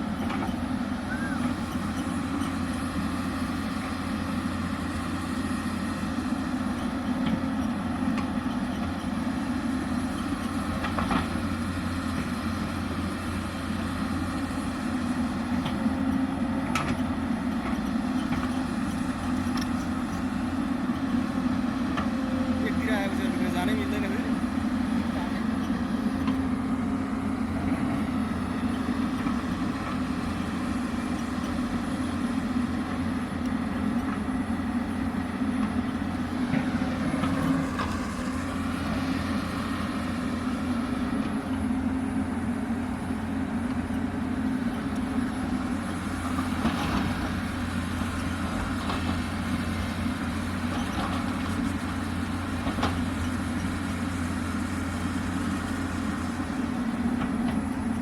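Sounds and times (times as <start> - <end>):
excavator diesel engine droning: 0.0 - 58.0.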